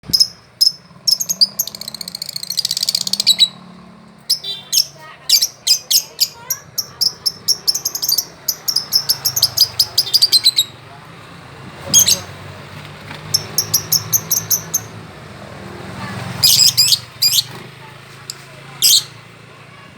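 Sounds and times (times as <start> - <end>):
small songbird chirping: 0.1 - 10.8, 13.3 - 15.0, 16.4 - 17.6.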